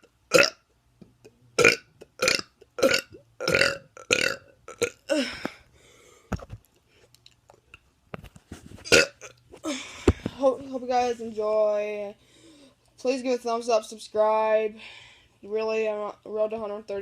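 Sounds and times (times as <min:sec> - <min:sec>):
person burping: 0:00.3 - 0:00.6, 0:01.2 - 0:05.6, 0:08.9 - 0:09.8.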